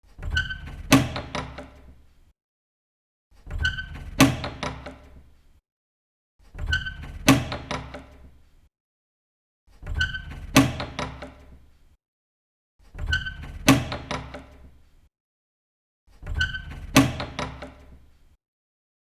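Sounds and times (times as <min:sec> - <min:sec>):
door banging: 0:06.7 - 0:08.1.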